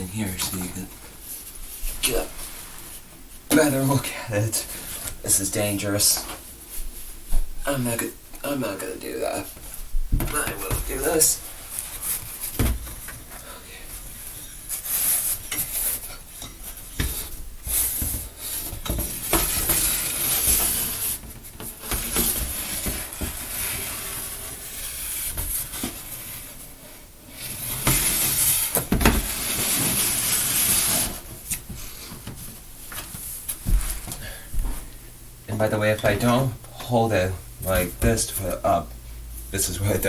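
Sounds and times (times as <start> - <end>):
garage door rubbing and scraping: 14.4 - 26.6, 27.3 - 31.3.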